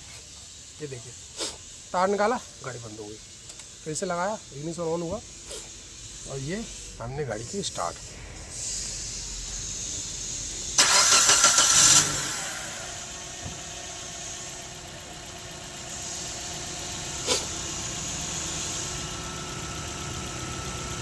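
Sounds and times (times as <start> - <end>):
car engine idling: 9.1 - 21.0
starter motor cranking engine: 10.8 - 21.0.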